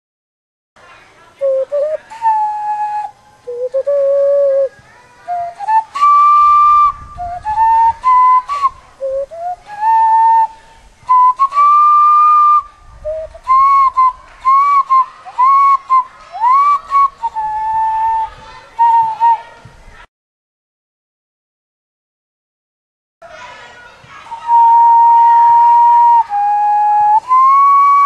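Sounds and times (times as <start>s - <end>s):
melody whistled through hands: 1.4s - 4.7s, 5.3s - 19.4s, 24.3s - 28.0s.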